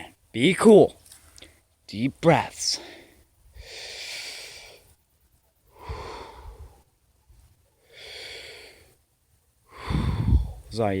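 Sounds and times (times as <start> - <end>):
person breathing deeply: 2.8 - 5.0, 5.7 - 6.9, 7.8 - 9.0, 9.7 - 10.7.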